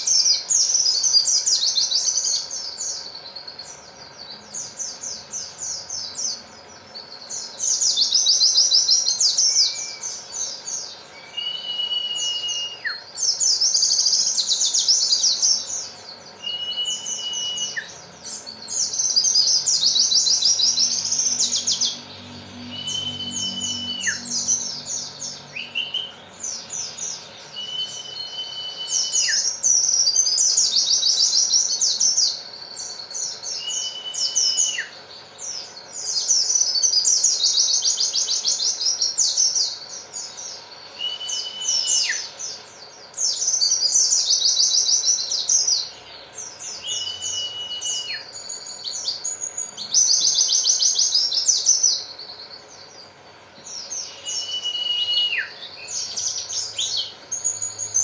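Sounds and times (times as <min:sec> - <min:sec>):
bird chirping trills: 0:00.0 - 0:58.0
bird whistle with falling note: 0:54.2 - 0:55.6.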